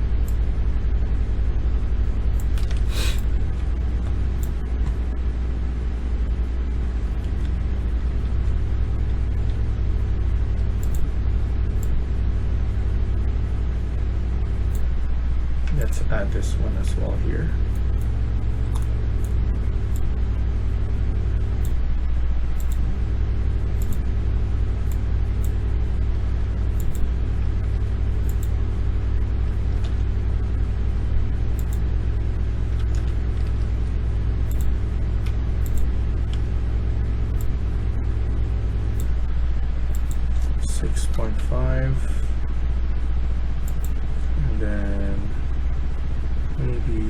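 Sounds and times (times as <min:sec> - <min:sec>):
low background rumble: 0:00.0 - 0:47.0.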